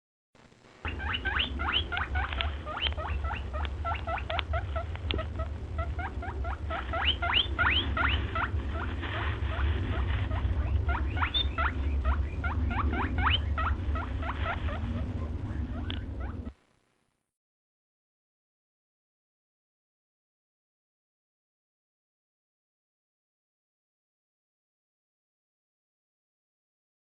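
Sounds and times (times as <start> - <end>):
low hum: 0.4 - 17.2
guinea pig squealing: 0.9 - 16.6.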